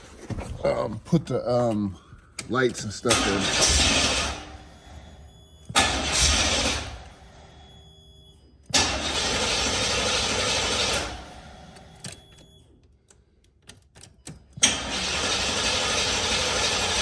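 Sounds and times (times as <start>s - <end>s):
sharp starter clicks: 1.7s - 4.6s, 5.7s - 7.2s, 8.7s - 11.2s, 14.3s - 17.0s
engine cranking on starter: 2.4s - 5.0s, 5.7s - 7.6s, 8.7s - 12.0s, 14.6s - 17.0s.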